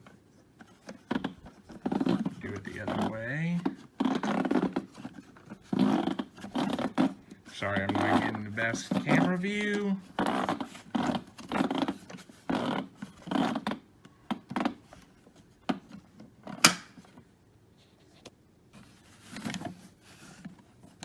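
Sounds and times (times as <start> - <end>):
handling rustling and scraping: 0.0 - 21.0
clicks and knocks: 16.6 - 17.2.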